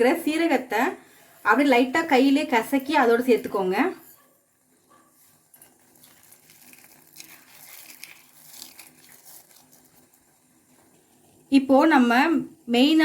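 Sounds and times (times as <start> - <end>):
crinkling and rustling: 5.3 - 11.0.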